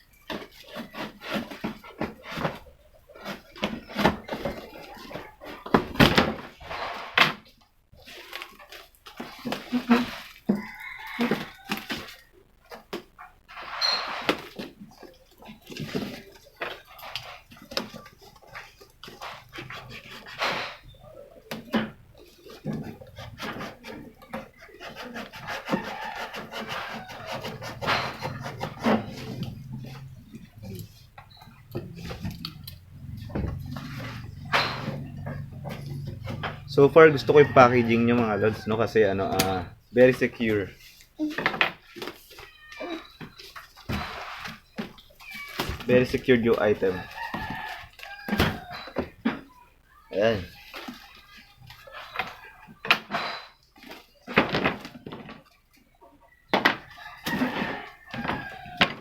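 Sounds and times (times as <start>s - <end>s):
knocks and thumps of boxes: 0.0s - 7.5s, 12.8s - 36.8s, 39.2s - 49.5s, 50.4s - 55.5s, 56.5s - 59.0s
packing material scraping cardboard: 0.2s - 7.4s, 8.0s - 12.2s, 13.5s - 31.2s, 33.3s - 35.1s, 39.4s - 48.9s.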